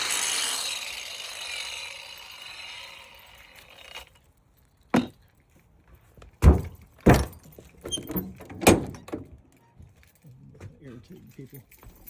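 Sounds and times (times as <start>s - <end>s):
angle grinder whirring: 0.0s - 4.1s
heavy knocks: 5.0s - 5.2s, 6.4s - 7.6s.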